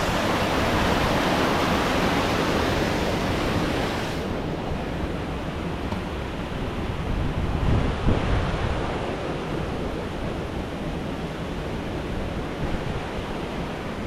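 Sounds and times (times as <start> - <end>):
river water rushing: 0.0 - 14.0
wind buffeting microphone: 0.0 - 14.0.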